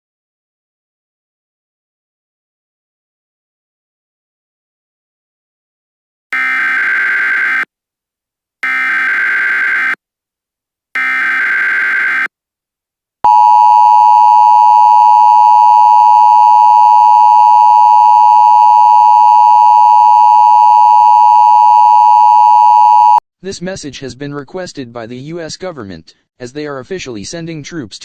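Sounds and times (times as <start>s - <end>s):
two-tone attention signal: 13.3s - 23.2s.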